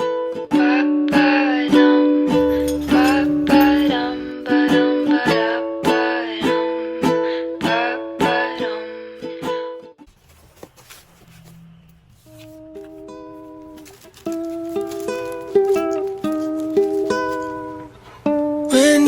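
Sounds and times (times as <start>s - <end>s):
acoustic pop song with ukulele: 0.0s - 10.0s, 14.6s - 19.0s.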